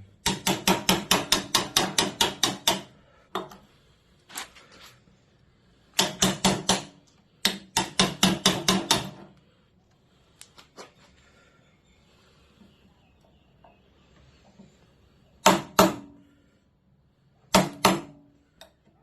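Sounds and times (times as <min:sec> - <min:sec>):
chisel being struck into timber: 0:00.2 - 0:03.5, 0:06.0 - 0:09.2, 0:15.4 - 0:16.2, 0:17.5 - 0:18.2.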